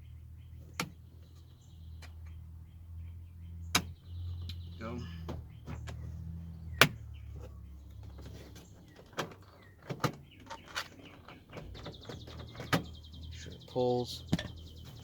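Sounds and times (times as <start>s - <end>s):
sharp plastic clicks and knocks: 3.7s - 4.6s.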